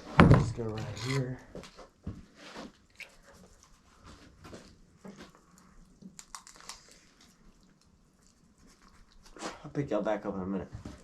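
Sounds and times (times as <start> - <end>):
knife scraping carcass: 0.7 - 1.3.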